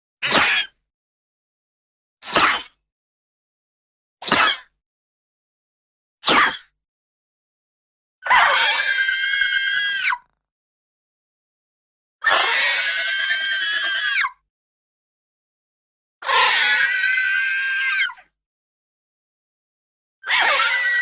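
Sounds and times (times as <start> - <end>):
high-pitched creature cries: 12.4 - 14.3, 16.3 - 18.2, 20.3 - 21.0.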